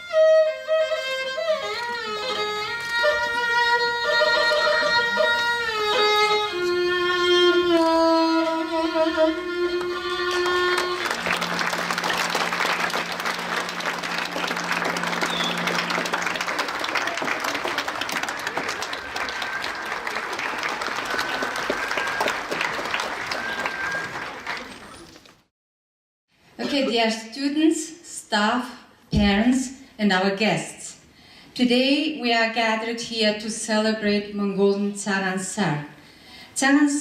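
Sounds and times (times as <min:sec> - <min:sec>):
live instrumental music: 0:00.0 - 0:24.9
audience applauding: 0:09.7 - 0:25.4.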